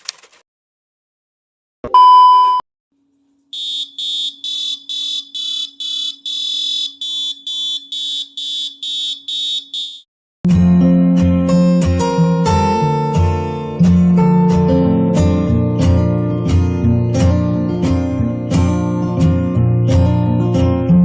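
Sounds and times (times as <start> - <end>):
loud beep: 1.9 - 2.6, 3.6 - 10.1
shrill pulsing alarm: 3.5 - 10.1.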